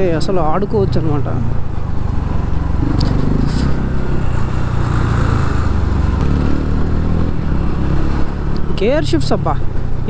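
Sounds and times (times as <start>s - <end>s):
wind and road noise: 0.0s - 10.0s
motorcycle engine running: 1.1s - 10.0s.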